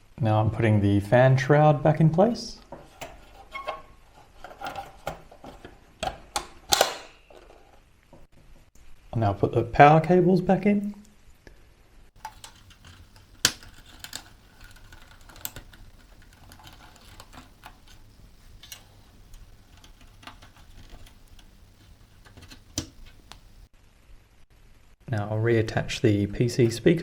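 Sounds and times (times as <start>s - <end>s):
small plastic clicks: 12.2s - 23.7s.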